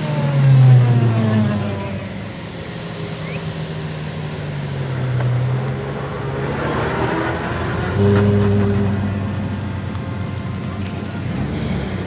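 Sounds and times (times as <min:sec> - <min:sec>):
car engine running: 0:07.1 - 0:12.0.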